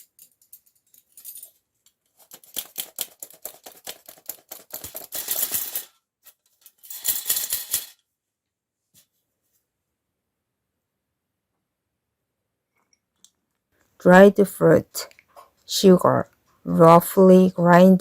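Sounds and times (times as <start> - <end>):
clicking and rattling in a bowl: 0.0 - 8.0.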